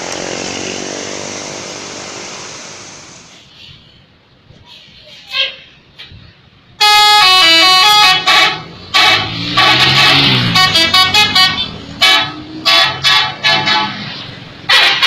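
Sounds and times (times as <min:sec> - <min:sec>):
loud horn blasts: 0:06.8 - 0:15.0
musical bus horn melody: 0:06.8 - 0:15.0.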